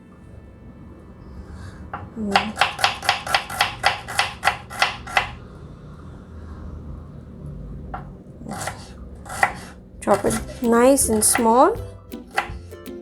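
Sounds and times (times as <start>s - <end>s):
knife chopping on cutting board: 2.0s - 5.4s, 8.0s - 12.6s.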